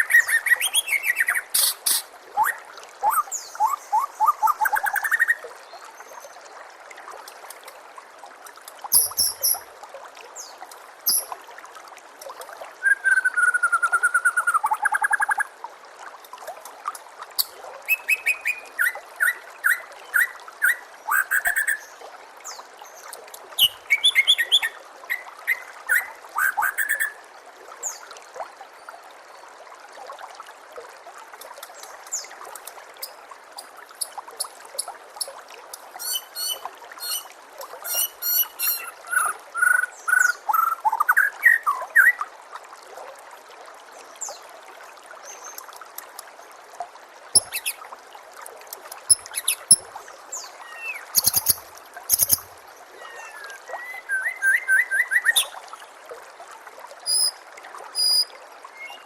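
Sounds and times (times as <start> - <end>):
bird singing whistles and trills: 0.0 - 5.4, 8.9 - 9.6, 12.8 - 15.2, 36.0 - 37.2, 37.9 - 42.2, 50.7 - 52.4, 53.0 - 55.5, 57.1 - 57.4, 58.0 - 59.0
trickle of running water: 0.0 - 59.0.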